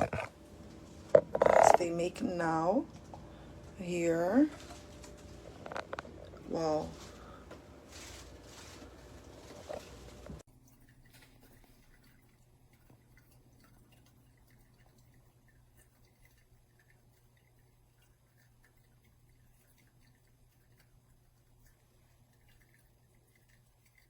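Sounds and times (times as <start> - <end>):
coffee dripping: 0.0 - 24.0
low steady hum: 0.0 - 24.0.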